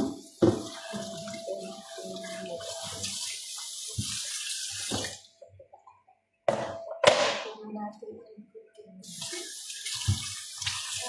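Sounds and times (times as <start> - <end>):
tap running into sink: 0.0 - 1.4, 2.2 - 5.2, 9.1 - 11.0.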